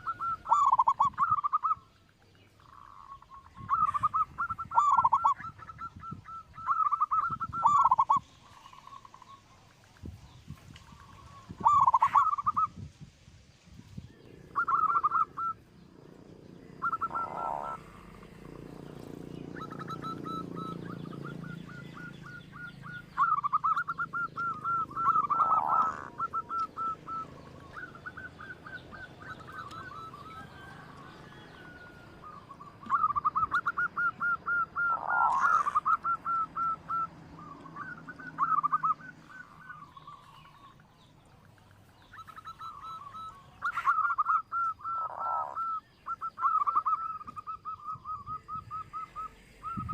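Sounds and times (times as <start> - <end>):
dove cooing: 0.0 - 1.9, 2.6 - 9.4, 10.7 - 12.7, 14.1 - 40.8, 42.0 - 49.9.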